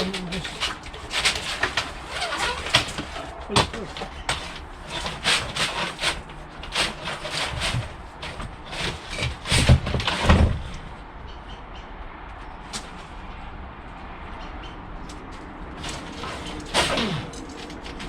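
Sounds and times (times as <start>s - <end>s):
cable rubbing through conduit: 0.0s - 10.8s, 15.7s - 18.0s.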